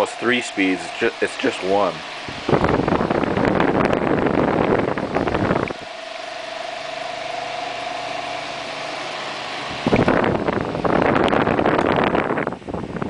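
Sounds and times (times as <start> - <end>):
desk fan air rushing: 0.0 - 13.0.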